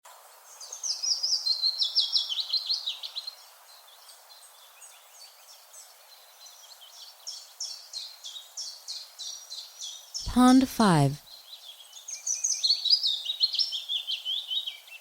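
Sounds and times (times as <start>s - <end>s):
light breeze hiss: 0.1s - 10.2s.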